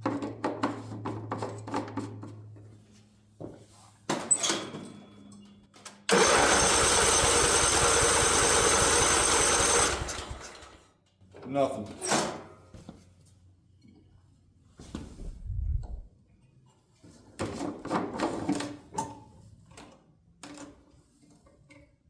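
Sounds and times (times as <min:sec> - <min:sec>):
electric starter cranking engine: 0:06.1 - 0:10.8.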